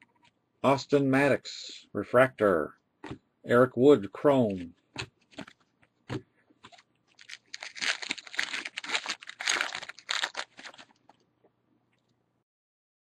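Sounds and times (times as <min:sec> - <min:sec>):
foil wrapper crinkling and tearing: 0:06.7 - 0:11.1.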